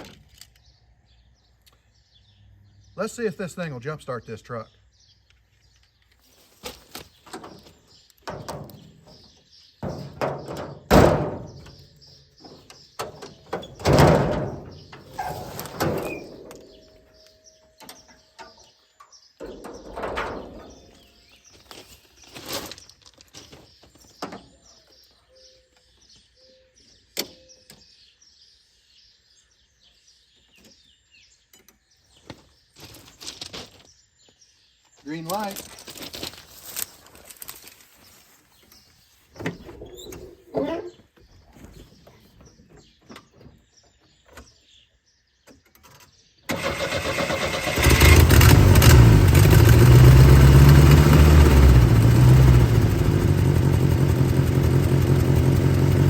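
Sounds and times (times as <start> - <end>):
birds chirping: 0.0 - 56.0
equipment clunks and knocks: 8.2 - 11.8, 12.4 - 16.7
loud thunks: 8.2 - 16.7.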